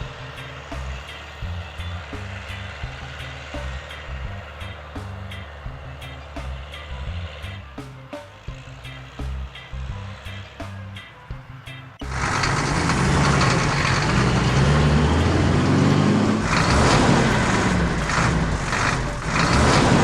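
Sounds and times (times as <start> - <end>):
heavy truck engine running: 0.0 - 20.0.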